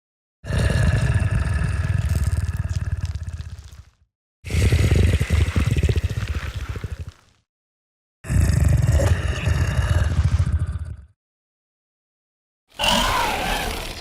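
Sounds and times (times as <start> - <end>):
creature growls with hiss: 0.4 - 3.9, 8.3 - 11.1, 12.7 - 14.0.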